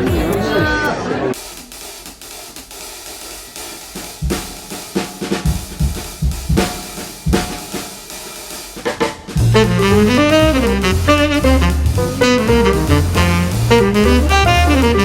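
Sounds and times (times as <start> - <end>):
drum kit beat: 1.4 - 15.0
saxophone melody: 9.4 - 15.0.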